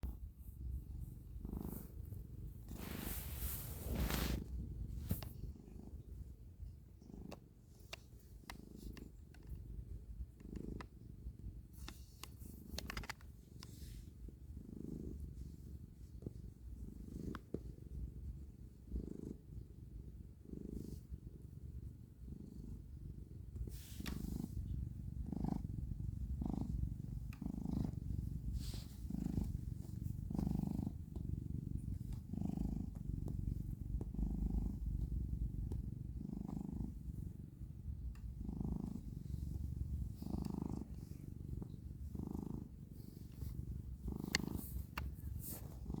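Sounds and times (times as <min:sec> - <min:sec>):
cat purring: 0:00.0 - 0:46.0
rustle: 0:02.7 - 0:05.3
small clicks: 0:11.8 - 0:13.8.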